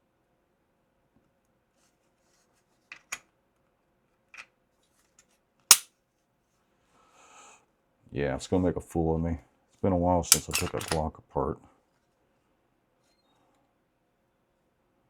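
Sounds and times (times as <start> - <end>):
pistol mechanical clicks: 10.3 - 11.0
pistol slide snap: 10.3 - 11.0.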